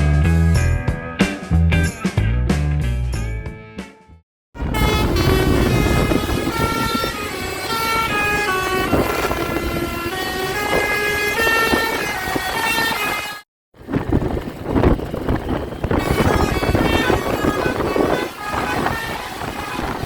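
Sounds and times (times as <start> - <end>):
musical bus air horn melody: 4.6 - 13.5, 15.9 - 20.0
bus vehicle noise: 4.6 - 20.0.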